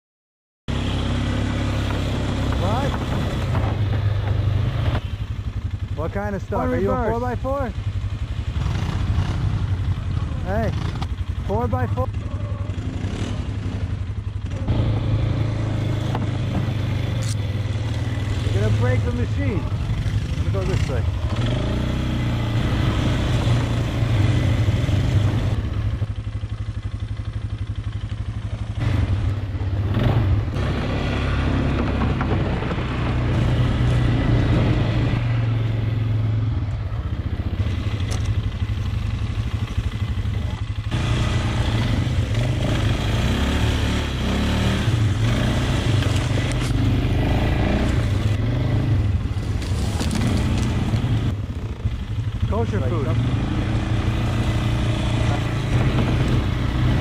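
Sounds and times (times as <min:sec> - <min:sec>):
atv engine running: 0:00.7 - 0:57.0
knocks and rattles: 0:31.6 - 0:33.4.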